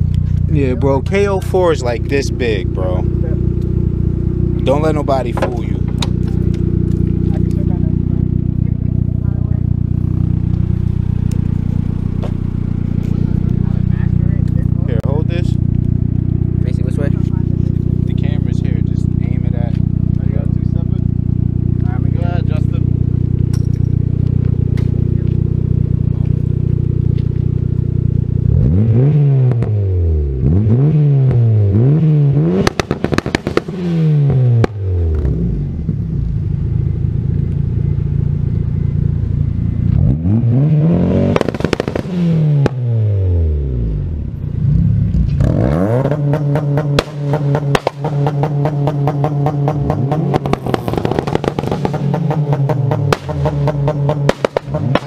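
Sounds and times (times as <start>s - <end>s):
car engine idling and revving: 0.0s - 55.0s
crackling exhaust pops: 4.6s - 7.7s, 10.2s - 13.8s, 15.6s - 16.4s, 23.3s - 25.6s, 32.5s - 35.4s, 41.2s - 42.9s, 45.0s - 55.0s
rev limiter stutter: 39.8s - 43.2s, 44.6s - 55.0s.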